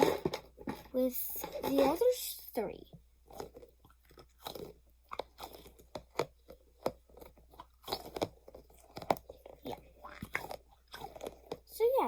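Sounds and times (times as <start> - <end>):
stress ball squeezed crackling: 3.2 - 12.0.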